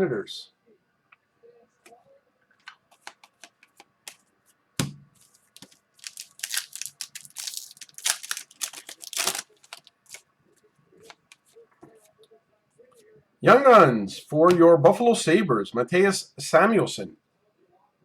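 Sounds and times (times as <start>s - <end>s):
card pack wrappers crinkling: 5.3s - 10.2s
cards ticking: 5.6s - 10.2s.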